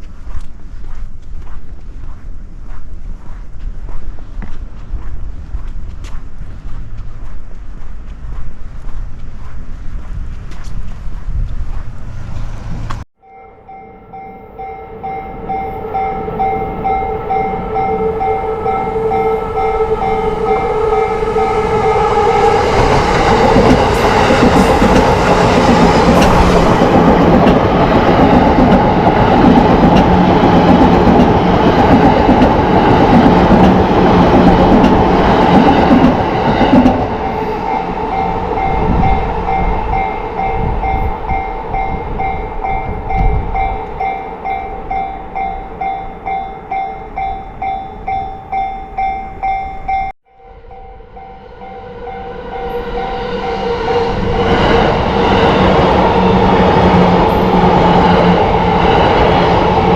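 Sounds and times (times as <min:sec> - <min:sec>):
train passing: 0:00.0 - 0:59.9
level crossing warning bell: 0:13.2 - 0:26.8, 0:37.1 - 0:53.6.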